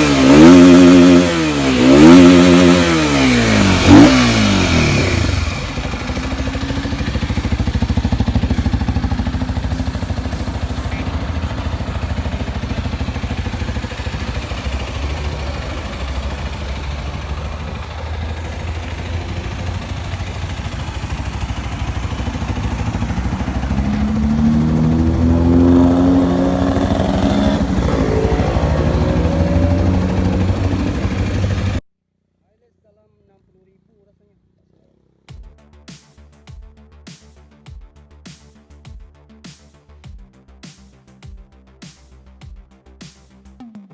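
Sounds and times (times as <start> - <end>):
motorcycle engine idling and revving: 0.0 - 31.8.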